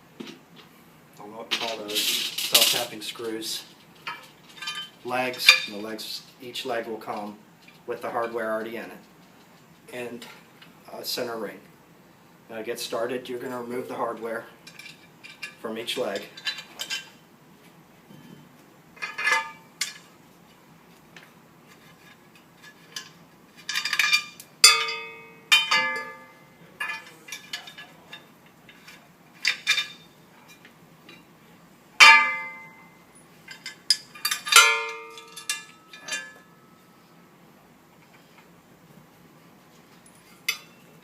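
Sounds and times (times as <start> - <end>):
metal hardware clinking: 4.0 - 5.7, 19.0 - 20.1, 21.8 - 31.3, 32.0 - 36.8, 40.0 - 40.9.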